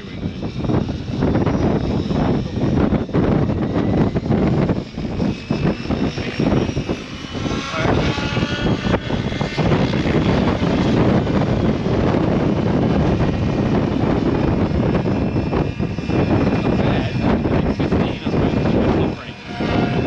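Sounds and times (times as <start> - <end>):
rc helicopter rotor whine: 0.0 - 20.0
wind rumbling on microphone: 0.0 - 20.0.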